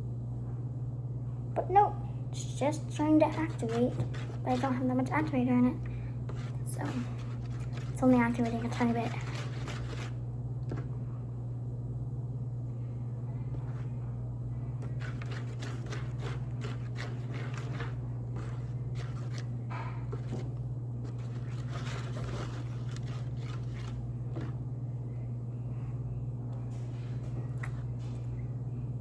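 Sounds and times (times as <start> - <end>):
steady low hum: 0.0 - 29.0
hands handling supplies clicks and scrapes: 3.2 - 5.4, 6.3 - 10.9, 14.8 - 24.6.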